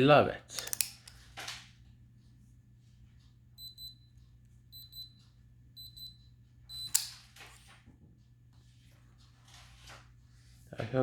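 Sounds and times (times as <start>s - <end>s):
padlock high beeps: 3.6s - 4.1s, 4.7s - 5.2s, 5.8s - 7.1s.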